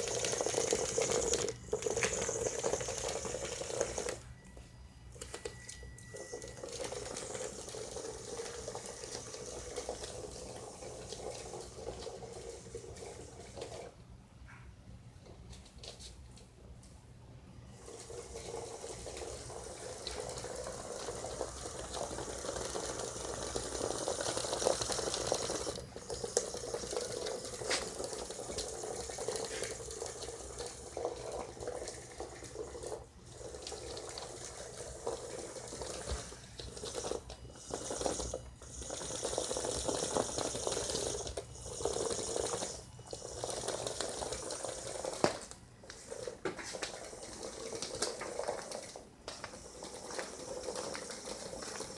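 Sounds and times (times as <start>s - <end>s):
gear motors whirring: 0.0s - 4.2s, 17.8s - 51.9s.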